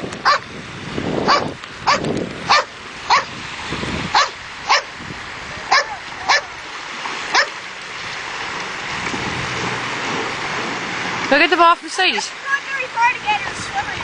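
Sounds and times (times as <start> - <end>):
dog yipping: 0.2 - 0.4, 1.3 - 3.3, 4.1 - 4.9, 5.7 - 6.5, 7.3 - 7.6.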